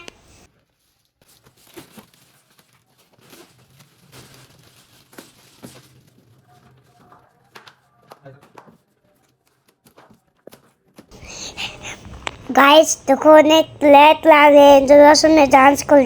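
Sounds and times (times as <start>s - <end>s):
faint low hum: 11.2s - 16.0s.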